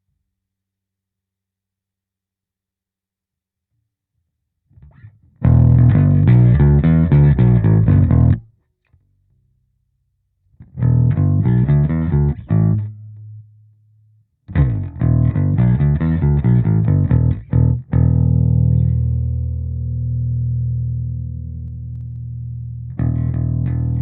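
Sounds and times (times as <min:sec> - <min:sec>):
electric bass riff: 0:04.8 - 0:08.5, 0:10.6 - 0:13.4, 0:14.5 - 0:24.0.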